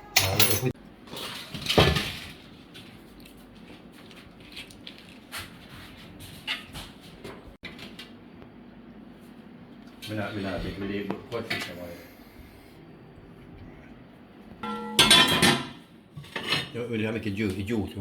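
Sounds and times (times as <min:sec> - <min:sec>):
plates and cutlery clinking: 0:00.0 - 0:00.8, 0:14.6 - 0:16.8.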